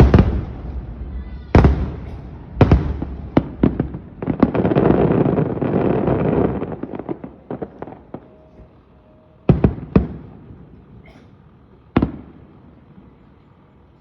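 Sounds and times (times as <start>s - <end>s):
sharp firework bangs: 0.0s - 8.4s
fireworks bursting and crackling: 0.0s - 13.8s.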